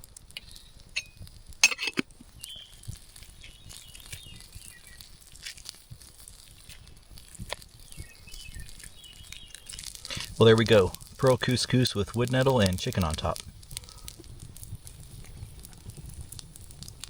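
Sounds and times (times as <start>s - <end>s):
camp cookware clattering: 0.4s - 2.2s.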